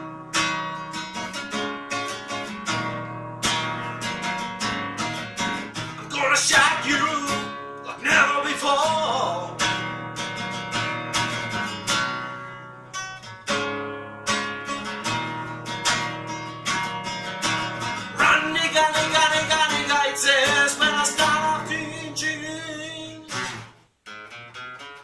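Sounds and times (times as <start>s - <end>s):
acoustic guitar strumming: 0.0s - 25.0s
person singing: 6.0s - 9.9s, 18.1s - 23.5s.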